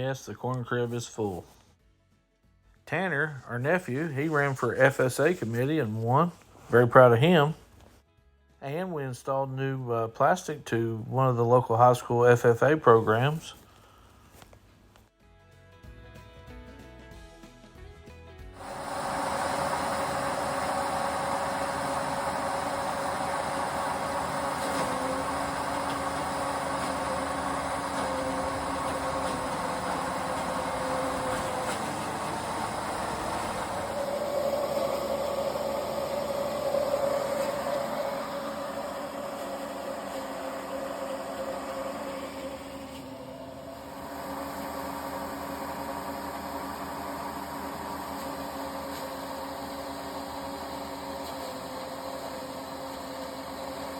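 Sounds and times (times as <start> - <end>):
machine motor running: 18.6 - 53.9.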